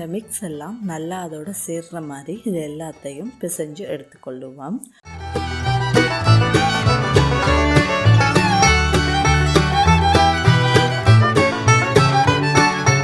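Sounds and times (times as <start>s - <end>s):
upbeat bluegrass music: 5.1s - 13.0s.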